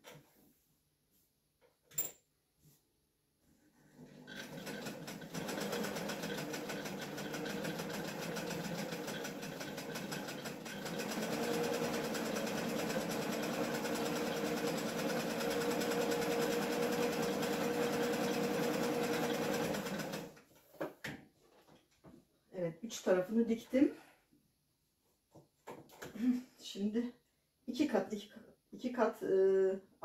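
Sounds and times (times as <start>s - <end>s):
electric sewing machine stitching: 3.9s - 20.4s.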